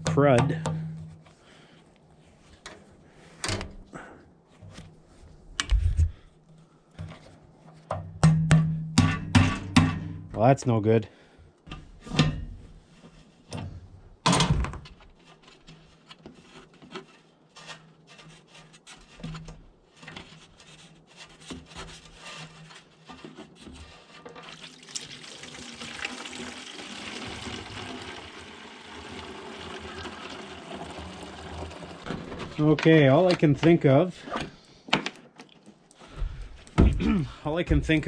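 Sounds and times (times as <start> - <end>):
liquid pouring: 24.4 - 32.1.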